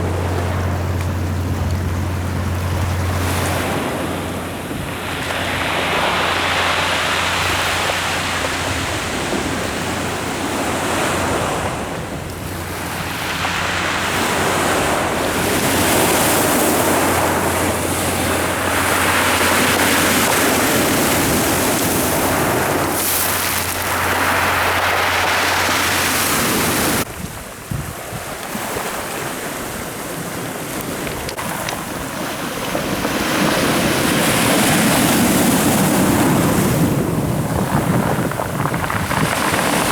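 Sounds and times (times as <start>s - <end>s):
steady low hum: 0.0s - 27.1s
sea surf breaking on shore: 0.0s - 39.9s
wind buffeting microphone: 0.0s - 39.9s.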